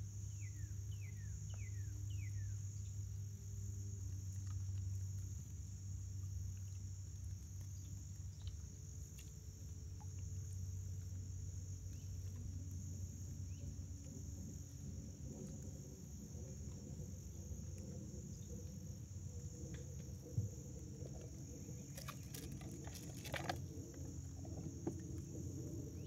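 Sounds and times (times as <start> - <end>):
crickets trilling: 0.0 - 26.0
low steady hum: 0.0 - 26.0.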